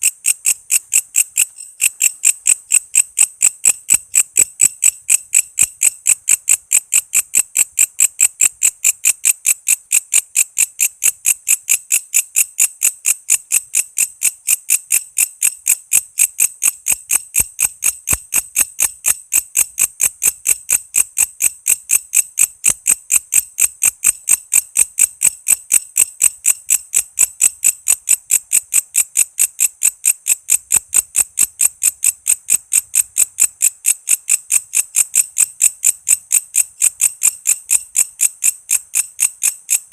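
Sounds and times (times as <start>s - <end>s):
insect high-pitched chirps: 0.0s - 39.9s.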